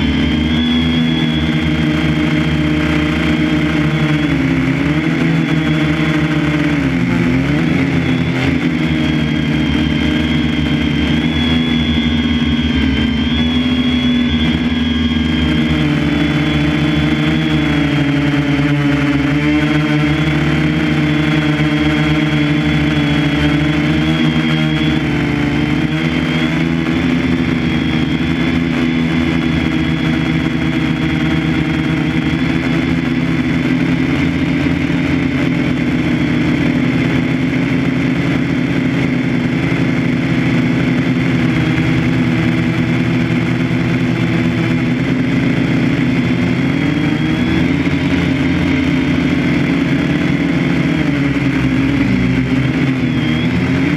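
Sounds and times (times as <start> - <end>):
loud machine hum: 0.0 - 53.9
thin high whine: 0.0 - 53.9.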